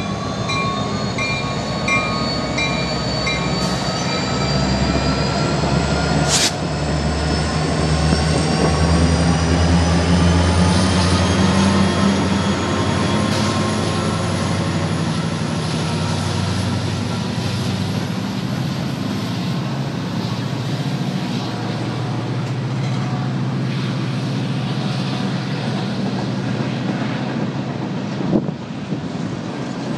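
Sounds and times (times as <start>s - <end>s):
high whine rising in pitch: 0.0s - 6.2s
diesel locomotive rumbling: 0.0s - 29.9s.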